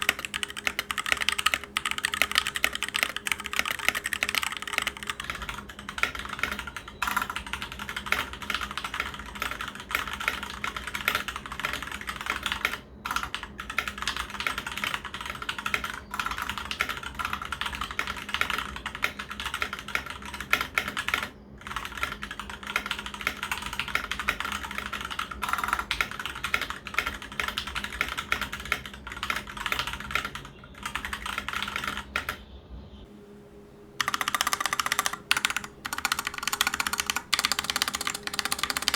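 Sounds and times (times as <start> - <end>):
fast typing on mechanical keyboard: 0.0 - 32.4, 34.0 - 38.9.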